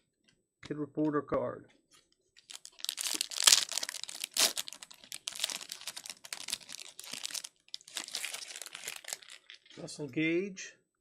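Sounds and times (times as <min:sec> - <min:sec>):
foil wrapper crinkling and tearing: 0:02.4 - 0:09.7.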